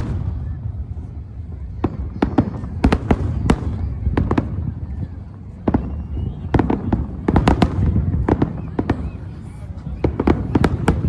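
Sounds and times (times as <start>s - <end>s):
fireworks bangs: 0.0s - 11.0s.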